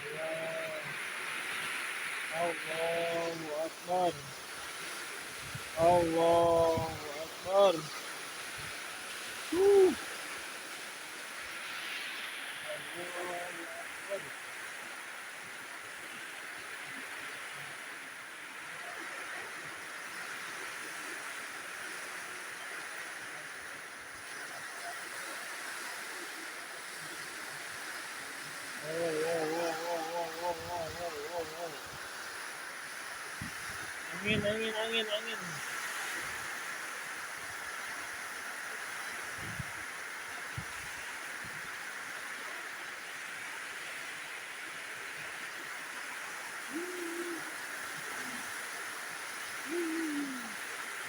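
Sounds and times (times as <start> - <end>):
strong wind: 0.0 - 10.5, 27.0 - 41.8
heavy rain hissing: 0.0 - 51.0
wind: 0.0 - 51.0
low hooting call: 9.4 - 10.2, 28.7 - 32.0, 46.6 - 48.5, 49.4 - 50.8.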